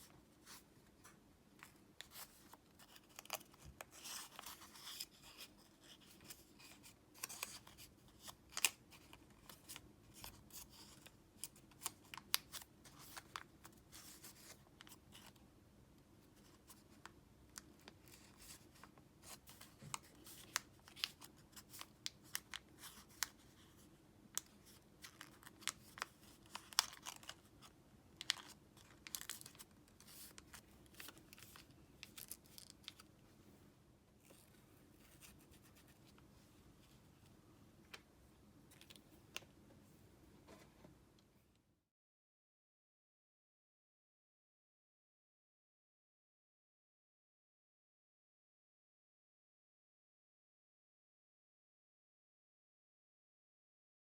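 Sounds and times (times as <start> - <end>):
paper rustling and creasing: 1.6 - 15.3, 24.4 - 33.1.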